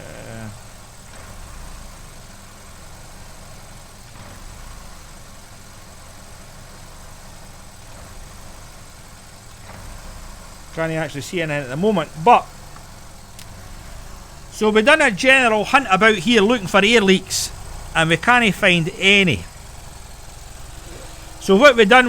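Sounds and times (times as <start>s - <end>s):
car engine idling roughly: 0.0s - 22.0s.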